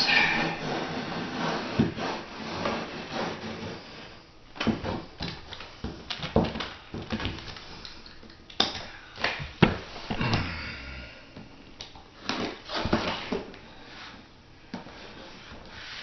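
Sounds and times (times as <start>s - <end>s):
vinyl flooring rustling and crinkling: 0.4s - 10.3s, 11.4s - 16.0s.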